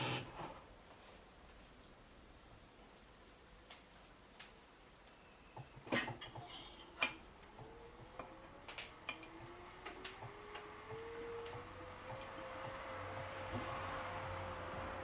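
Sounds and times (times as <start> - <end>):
washing machine motor whine: 0.0 - 0.3, 7.5 - 15.0.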